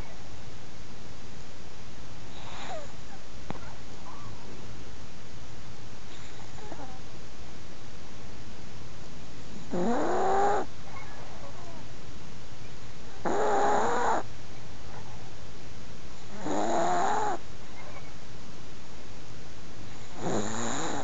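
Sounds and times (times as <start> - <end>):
steady hiss: 0.0 - 21.0
dog snoring: 2.3 - 3.0, 9.5 - 11.8, 13.2 - 14.3, 16.3 - 17.4, 19.9 - 21.0.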